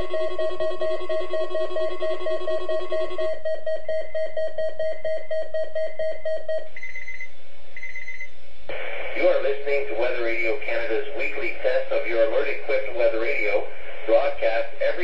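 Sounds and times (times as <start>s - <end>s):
short high-pitched tones: 0.0s - 8.2s
rapid electronic beeping: 0.0s - 8.3s.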